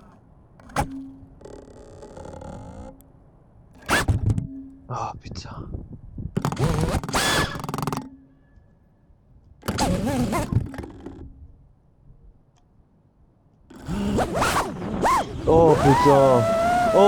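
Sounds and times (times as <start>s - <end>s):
man exclaiming anxiously: 15.5s - 17.0s.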